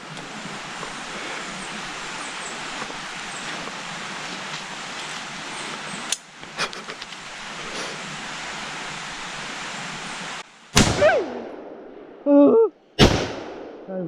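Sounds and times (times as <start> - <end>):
steady hiss: 0.0 - 11.0
rifle shot: 10.8 - 12.2, 13.0 - 13.9.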